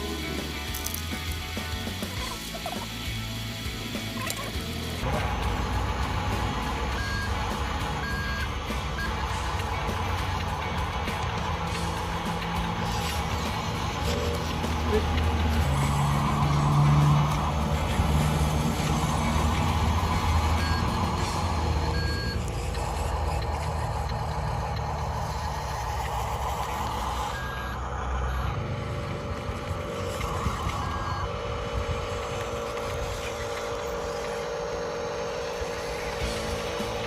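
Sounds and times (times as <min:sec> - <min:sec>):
simulated truck engine running: 0:00.0 - 0:37.0
reversing beeps: 0:06.9 - 0:09.7, 0:20.1 - 0:25.8, 0:26.8 - 0:28.6, 0:29.9 - 0:31.5.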